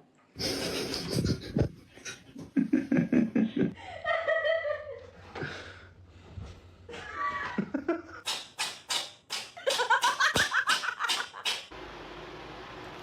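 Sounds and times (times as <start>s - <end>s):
person laughing: 0.4s - 5.7s, 6.9s - 8.3s, 9.6s - 11.5s.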